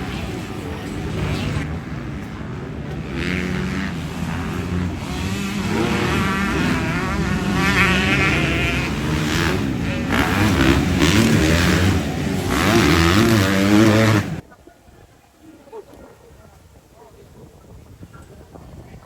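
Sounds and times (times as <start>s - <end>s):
motocross engines revving: 0.0s - 14.4s.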